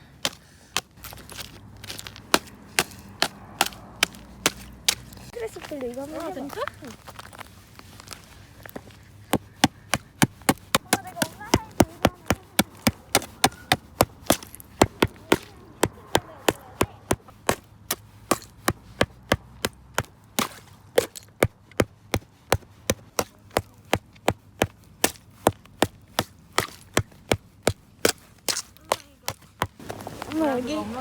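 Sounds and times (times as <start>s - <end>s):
stone striking ice: 0.2s - 5.4s, 12.6s - 15.5s, 16.5s - 21.5s, 25.8s - 27.0s, 28.0s - 29.7s.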